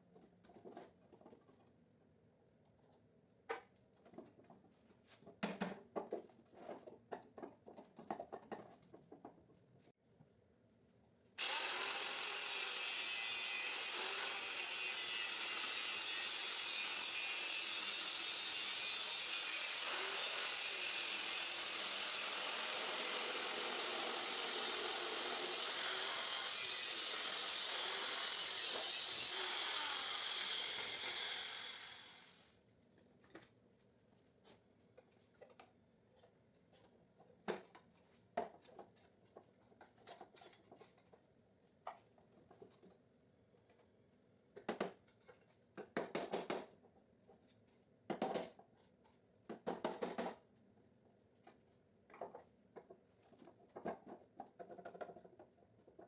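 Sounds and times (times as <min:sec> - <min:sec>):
power tool cutting metal casing: 0:11.4 - 0:32.5.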